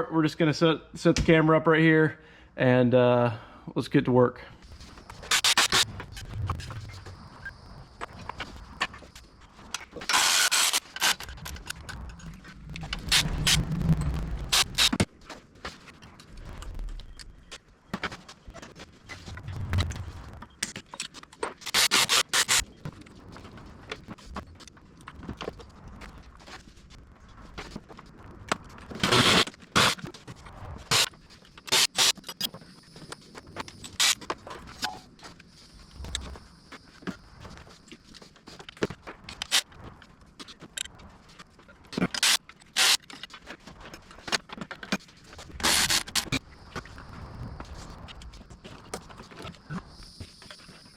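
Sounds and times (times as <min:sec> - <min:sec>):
tools clicking and scraping: 0:05.0 - 0:06.7, 0:08.8 - 0:13.6, 0:20.6 - 0:22.6, 0:30.9 - 0:35.4, 0:38.1 - 0:39.7, 0:42.0 - 0:45.0
loud rasping bursts: 0:05.2 - 0:05.8, 0:10.1 - 0:11.3, 0:13.0 - 0:13.6, 0:14.5 - 0:15.0, 0:21.6 - 0:22.6, 0:29.0 - 0:30.0, 0:30.9 - 0:32.1, 0:45.6 - 0:46.4.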